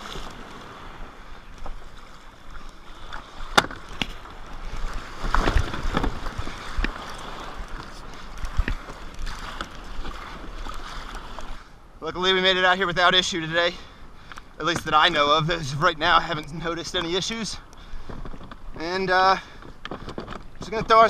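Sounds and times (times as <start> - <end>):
water splashing and sloshing: 0.0 - 12.0, 12.6 - 21.0
kayak knocks: 1.5 - 11.5, 19.6 - 21.0.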